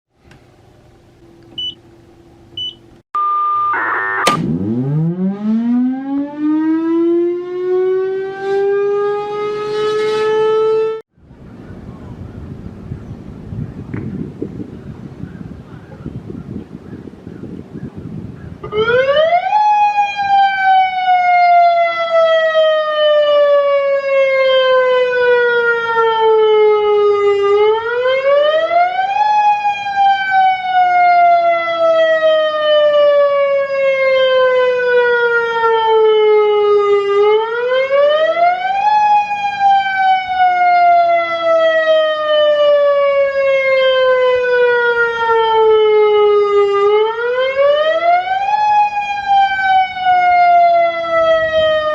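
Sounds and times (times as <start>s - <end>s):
outdoor warning siren wailing: 3.2s - 11.1s, 18.6s - 51.9s.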